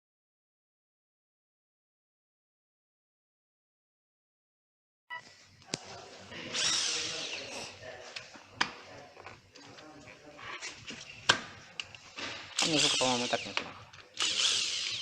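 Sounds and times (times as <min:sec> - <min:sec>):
tool whirring: 0:06.4 - 0:07.8, 0:10.5 - 0:15.0.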